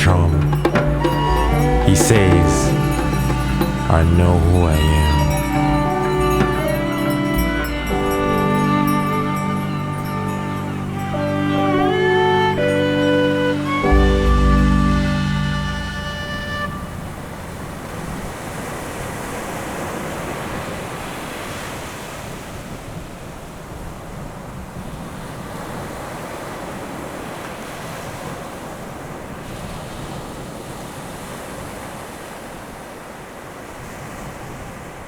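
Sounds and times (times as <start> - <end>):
ocean surf washing in: 0.0 - 22.0
wind: 0.0 - 35.0.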